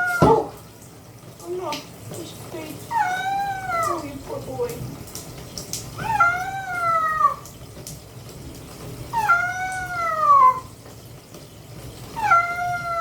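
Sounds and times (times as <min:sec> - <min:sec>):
cat meowing: 0:00.0 - 0:00.5, 0:02.9 - 0:04.1, 0:06.0 - 0:07.5, 0:09.1 - 0:10.7, 0:12.2 - 0:13.0.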